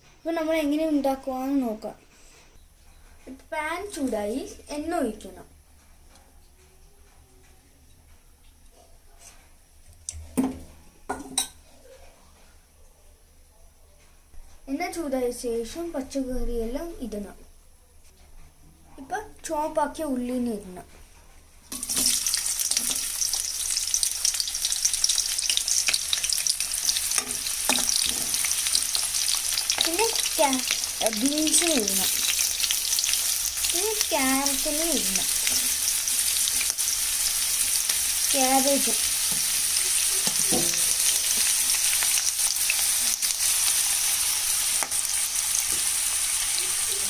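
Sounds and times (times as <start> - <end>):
onion sizzling in hot oil: 21.7 - 47.0
utensil scraping and tapping pan: 40.2 - 41.0.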